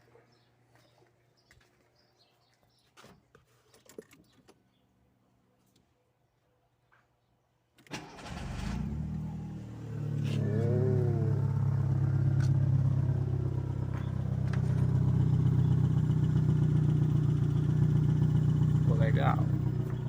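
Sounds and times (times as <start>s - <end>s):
car engine starting and running: 7.8s - 20.0s.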